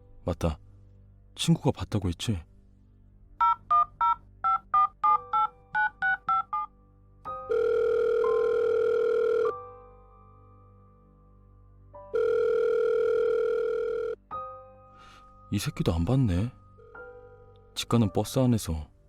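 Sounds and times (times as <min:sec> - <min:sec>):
phone ringback tone: 0:07.5 - 0:09.6, 0:12.1 - 0:14.2.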